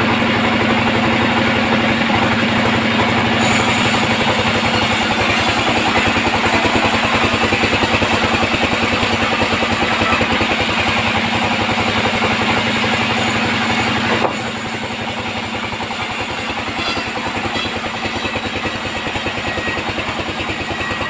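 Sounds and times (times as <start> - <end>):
band sawmill throbbing: 0.1 - 21.0
saw blade hissing: 3.4 - 10.4, 13.1 - 19.6.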